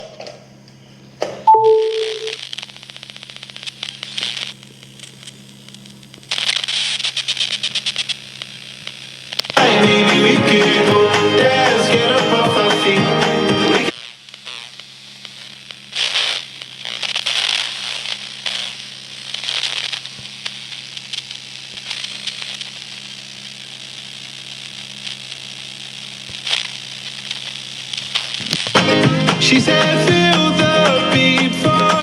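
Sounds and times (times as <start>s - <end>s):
loudspeaker static hiss and crackle: 0.0s - 32.0s
steady low hum: 14.0s - 28.8s.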